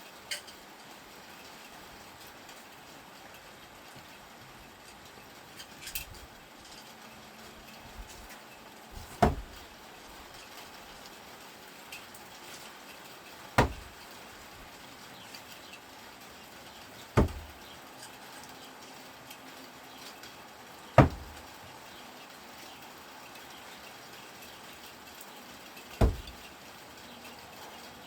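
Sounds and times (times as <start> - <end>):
screwdrivers striking target: 9.0 - 9.6, 13.6 - 13.9, 17.2 - 17.6, 21.0 - 21.4, 26.0 - 26.4.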